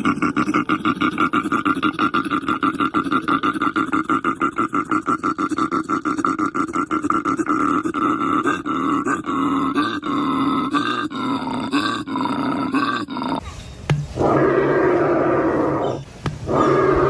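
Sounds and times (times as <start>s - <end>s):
bustard calling in rapid pulses: 14.1s - 17.0s.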